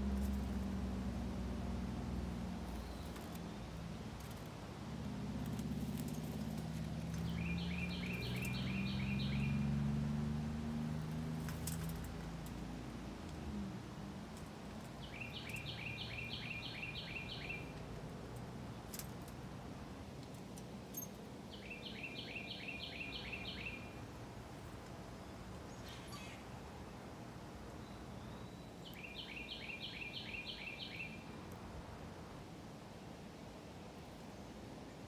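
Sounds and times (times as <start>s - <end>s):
faint outdoor hiss: 0.0s - 35.0s
bird whistling song: 7.2s - 9.7s, 15.0s - 17.7s, 21.5s - 23.9s, 28.2s - 31.2s.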